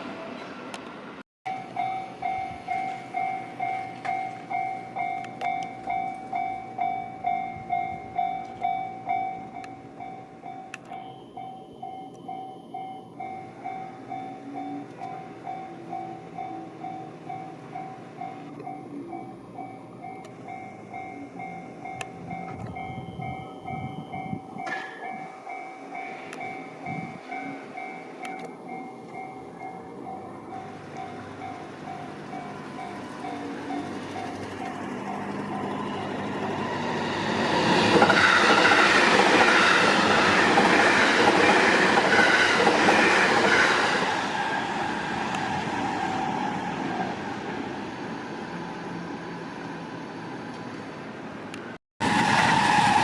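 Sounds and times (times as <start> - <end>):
train rumbling past: 0.0 - 53.0
level-crossing electronic bell chiming: 1.5 - 36.5.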